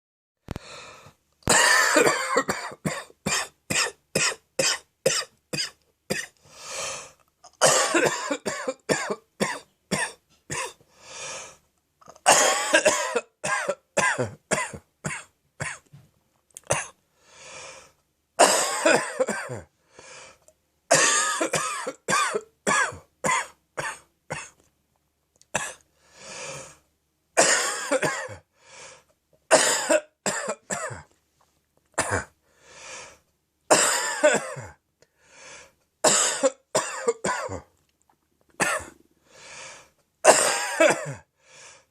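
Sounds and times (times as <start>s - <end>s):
deep wet coughing: 1.5s - 6.4s, 7.5s - 10.8s, 12.1s - 15.9s, 18.4s - 19.7s, 20.9s - 24.6s, 27.4s - 28.5s, 29.5s - 31.1s, 32.0s - 32.4s, 33.7s - 34.8s, 36.0s - 37.7s, 38.6s - 39.0s, 40.2s - 41.3s.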